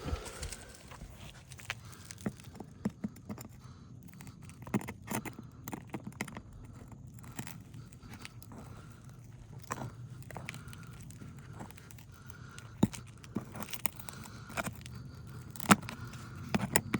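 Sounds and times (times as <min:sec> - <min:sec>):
pry bar scraping on roof shingles: 0:10.5 - 0:16.9.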